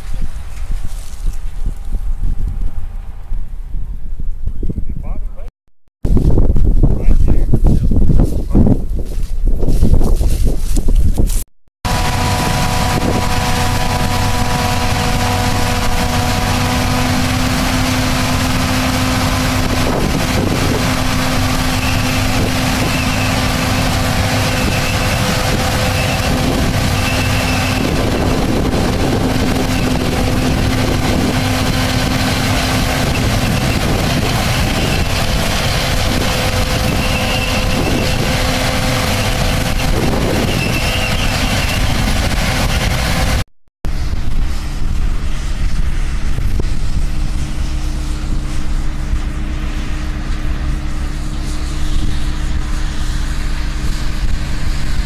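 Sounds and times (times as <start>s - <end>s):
machinery rattling: 11.9s - 43.4s
machinery whining tones: 11.9s - 55.0s
tractor engine drone: 11.9s - 55.0s.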